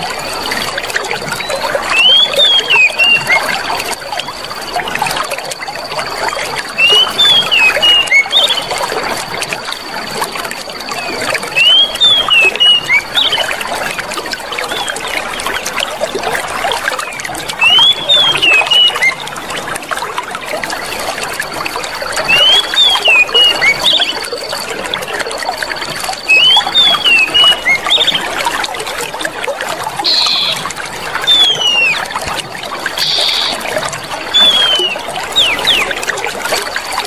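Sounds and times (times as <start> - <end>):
running water trickling: 0.0 - 37.0
high chirping calls: 1.4 - 3.6, 6.8 - 8.8, 11.0 - 13.5, 17.6 - 19.2, 22.3 - 24.5, 26.2 - 28.4, 30.0 - 32.2, 32.9 - 36.1
thin high tone: 30.0 - 32.1, 32.9 - 36.0.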